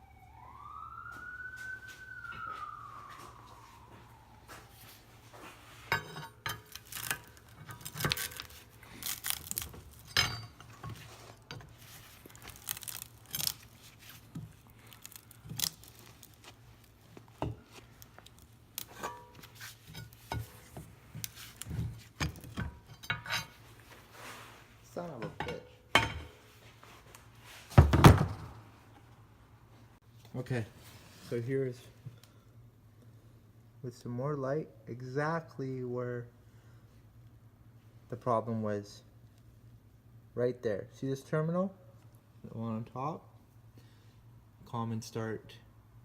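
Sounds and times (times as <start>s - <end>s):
metal parts clinking and knocking: 5.9s - 11.7s.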